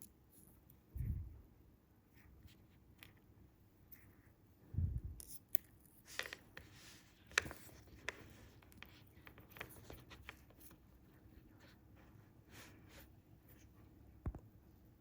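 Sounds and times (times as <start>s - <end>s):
fishing line rubbing and rustling: 5.0s - 13.8s.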